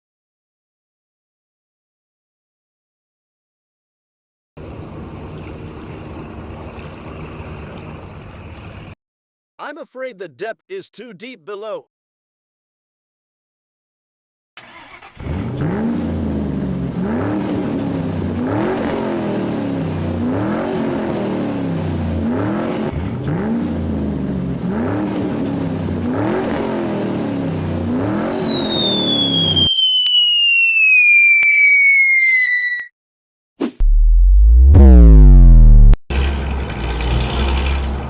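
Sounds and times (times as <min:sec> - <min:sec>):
vehicle engine revving: 0:14.6 - 0:29.6, 0:33.8 - 0:38.0
whistle falling in pitch: 0:27.8 - 0:32.9.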